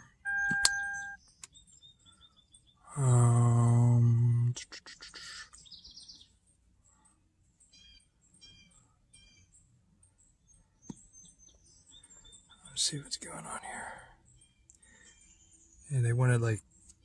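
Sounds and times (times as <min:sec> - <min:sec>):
faint high chirps: 0:00.0 - 0:17.0
high-pitched chime: 0:00.2 - 0:01.2
two-note warning beep: 0:00.2 - 0:01.2
electronic clicks: 0:00.2 - 0:01.5.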